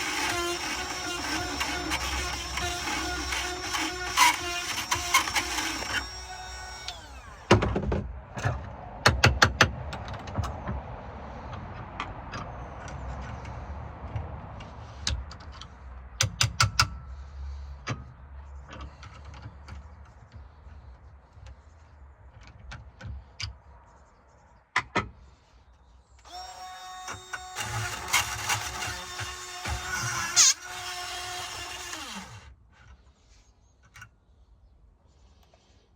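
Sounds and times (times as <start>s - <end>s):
power drill grinding lock: 0.0s - 7.5s, 26.2s - 32.5s.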